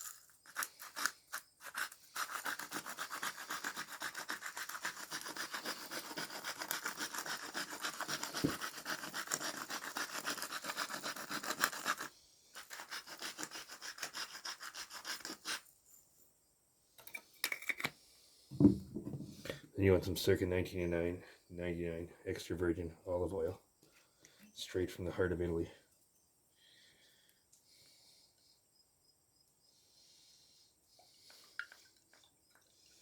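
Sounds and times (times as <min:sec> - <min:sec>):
salt grinder grating: 0:00.0 - 0:15.6.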